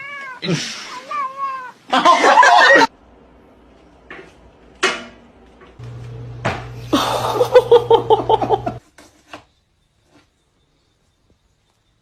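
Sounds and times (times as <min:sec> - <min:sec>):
person laughing: 0:01.9 - 0:02.9, 0:06.8 - 0:08.8
low steady hum: 0:05.8 - 0:08.8.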